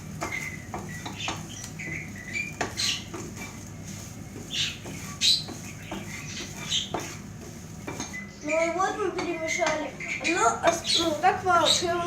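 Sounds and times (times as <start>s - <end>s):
spatula scraping frying pan: 0.0s - 9.4s.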